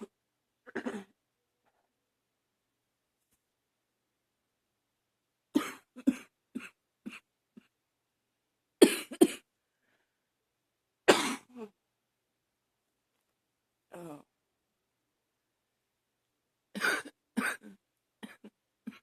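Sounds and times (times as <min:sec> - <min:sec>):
woman coughing: 0:05.6 - 0:07.2, 0:08.8 - 0:09.4, 0:11.1 - 0:11.7, 0:16.8 - 0:19.0.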